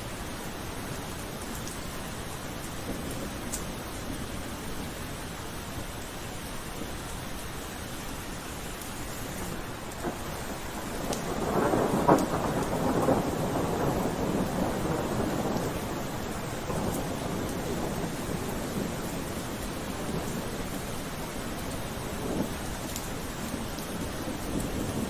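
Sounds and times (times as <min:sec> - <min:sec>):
steady rain: 0:00.0 - 0:25.0
thunder rolling: 0:09.6 - 0:19.0.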